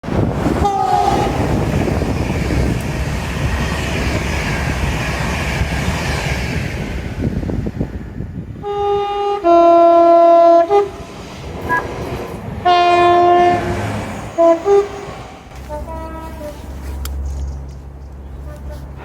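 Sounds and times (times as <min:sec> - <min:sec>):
passing train rumble: 0:00.0 - 0:19.0
two-tone train horn: 0:00.6 - 0:01.6, 0:08.6 - 0:11.1, 0:12.6 - 0:16.6, 0:18.5 - 0:19.0.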